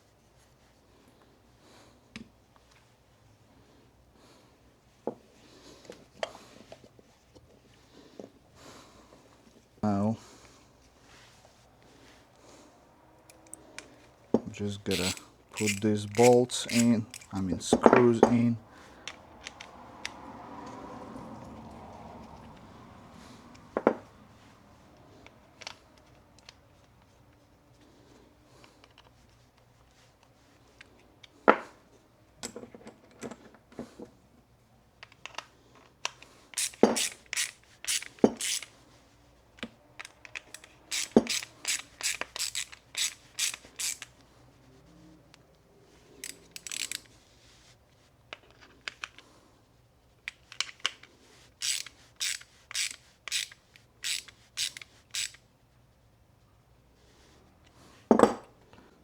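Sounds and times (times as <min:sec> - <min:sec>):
ratchet clicking: 0:14.7 - 0:17.4, 0:36.6 - 0:38.7, 0:40.0 - 0:44.2, 0:46.2 - 0:47.2, 0:51.6 - 0:55.4.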